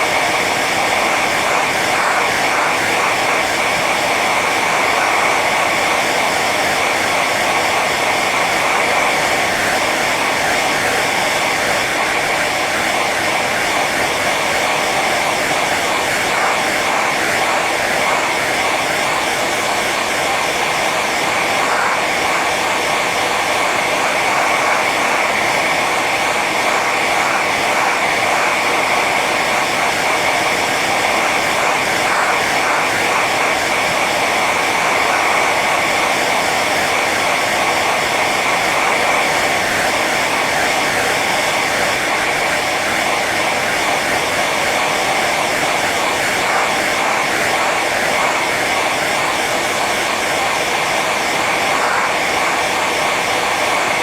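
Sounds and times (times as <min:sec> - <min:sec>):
hair dryer running: 0:00.0 - 0:54.0.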